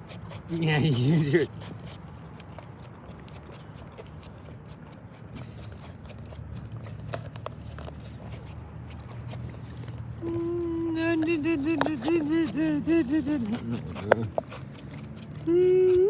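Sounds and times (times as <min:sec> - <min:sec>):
dog licking and chewing: 0:00.0 - 0:16.0
low steady hum: 0:03.6 - 0:16.0.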